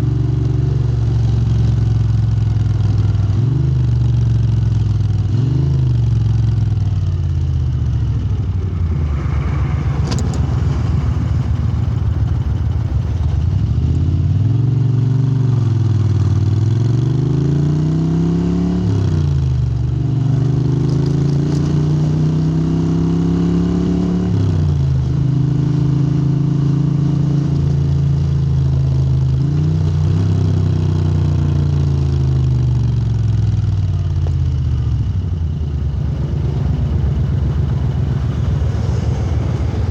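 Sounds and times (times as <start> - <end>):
motorcycle engine under load: 0.0 - 17.1, 27.5 - 39.9.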